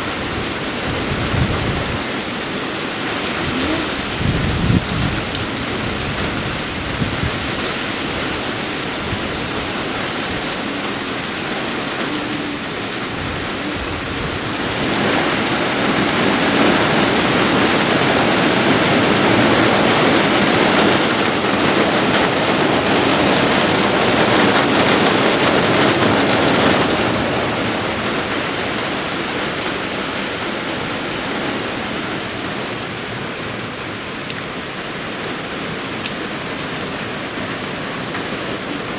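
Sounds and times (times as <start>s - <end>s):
rain shower falling: 0.0s - 38.9s.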